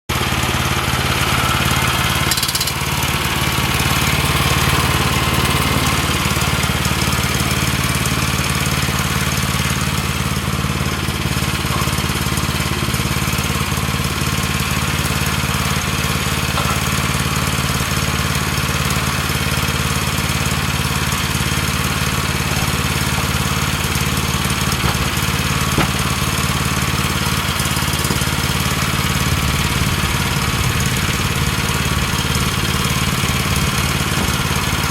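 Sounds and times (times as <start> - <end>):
small gasoline engine running: 0.1 - 34.9.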